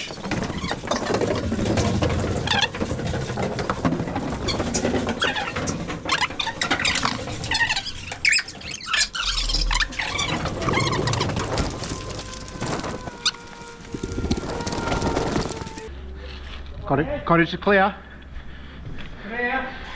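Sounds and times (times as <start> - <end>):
clatter: 0.0 - 15.9
squeaky sped-up sound: 4.4 - 15.9
rapid footsteps: 9.7 - 15.9.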